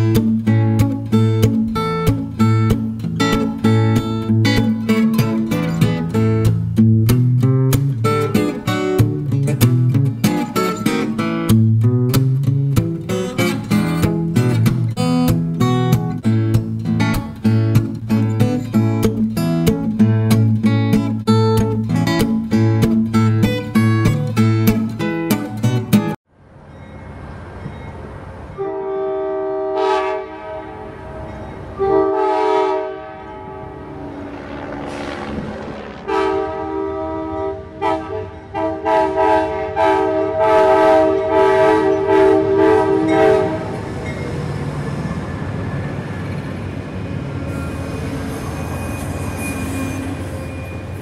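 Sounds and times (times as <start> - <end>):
train rumble: 26.4 - 51.0
train horn blasts: 28.5 - 43.9.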